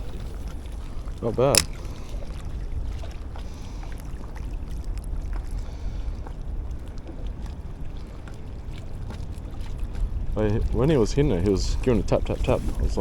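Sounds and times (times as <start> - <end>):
wind buffeting microphone: 4.5 - 13.0.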